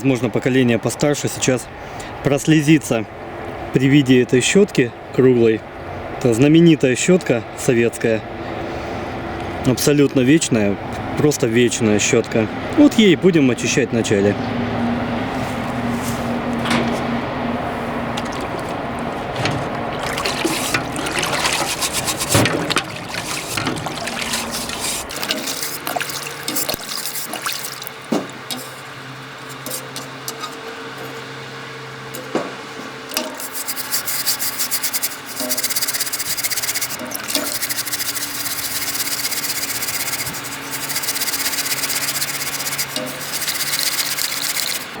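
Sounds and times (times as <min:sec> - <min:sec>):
water running: 0:17.9 - 0:28.7, 0:33.4 - 0:45.0
brush scrubbing metal: 0:18.1 - 0:28.8, 0:29.5 - 0:30.4, 0:33.1 - 0:45.0.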